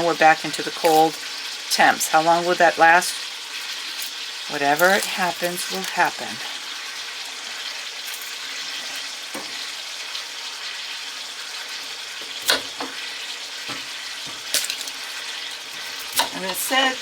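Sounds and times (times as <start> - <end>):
chicken sizzling in a pan: 0.0 - 17.0.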